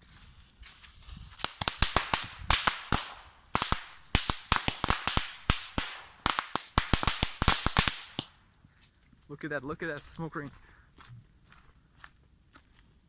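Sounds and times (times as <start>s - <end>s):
firework cracking and popping: 1.3s - 8.4s
firework hiss: 1.4s - 8.3s.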